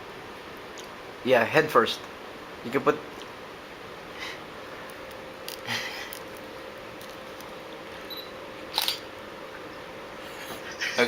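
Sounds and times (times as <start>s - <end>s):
camera shutter clicking: 8.7s - 9.0s.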